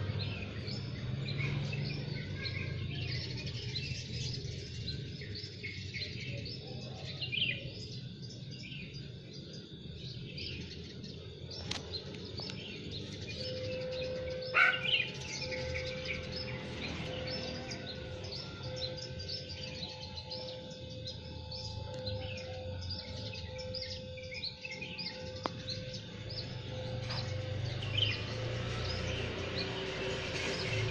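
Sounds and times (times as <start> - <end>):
wild birds chirping: 0.0 - 30.9
steady low tone: 7.6 - 30.9.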